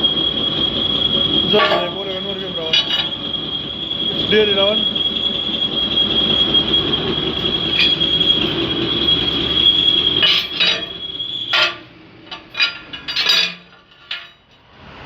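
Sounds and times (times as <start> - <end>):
high-pitched whine: 0.0 - 15.0
rough grinding noise: 0.9 - 14.7
metal clanks: 1.4 - 3.3, 7.4 - 14.7.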